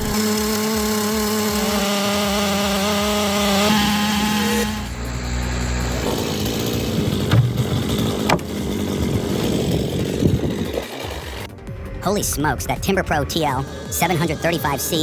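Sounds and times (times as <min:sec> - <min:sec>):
chainsaw running at high revs: 0:00.0 - 0:11.5
low rough engine: 0:00.0 - 0:12.0.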